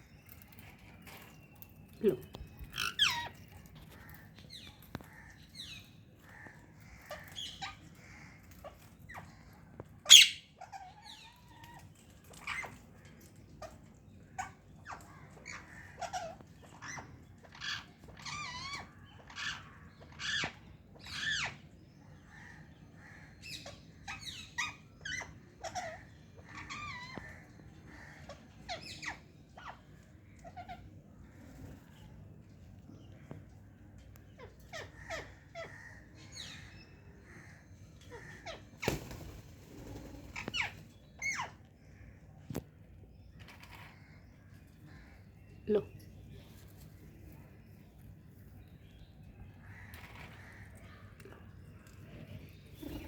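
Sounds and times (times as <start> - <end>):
parakeets squawking and chattering: 0.2 - 13.0, 13.6 - 21.6, 23.4 - 31.7, 34.3 - 42.2, 49.5 - 53.0.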